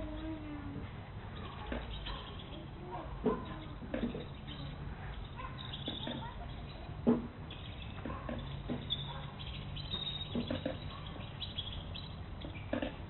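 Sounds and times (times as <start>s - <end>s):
faint bird chirps: 7.5s - 12.8s.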